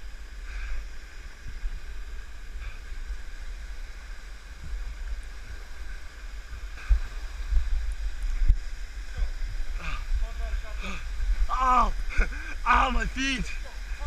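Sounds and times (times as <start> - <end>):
waterfall rushing: 8.7 - 14.0.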